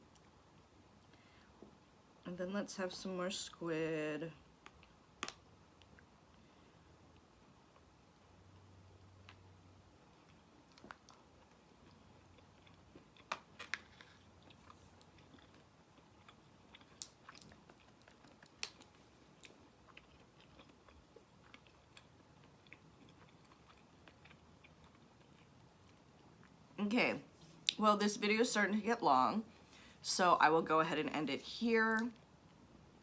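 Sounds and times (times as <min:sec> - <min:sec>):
person chewing food: 0:07.1 - 0:26.6.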